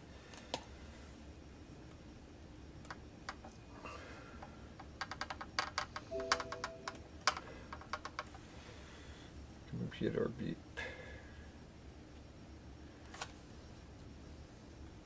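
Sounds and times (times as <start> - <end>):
short computer beep: 6.1 - 7.1.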